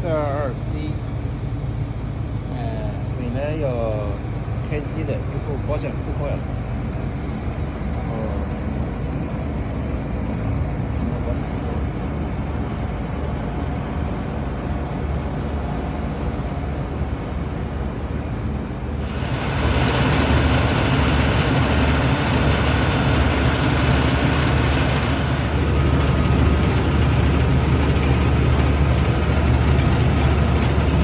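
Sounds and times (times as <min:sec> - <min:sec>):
hvac unit humming: 0:00.0 - 0:31.0
rushing hiss of fans: 0:18.9 - 0:31.0.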